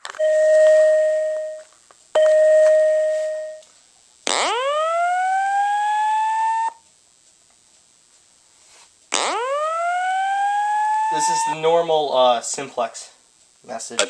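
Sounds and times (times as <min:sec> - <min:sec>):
fire alarm beeps: 0:00.0 - 0:03.6, 0:09.6 - 0:11.8
fire alarm rising sweep: 0:00.0 - 0:03.6, 0:04.3 - 0:06.8, 0:09.2 - 0:11.9.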